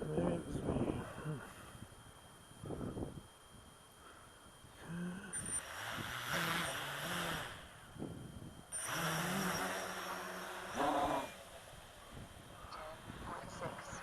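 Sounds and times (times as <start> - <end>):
drone motors spinning up: 4.9 - 14.0.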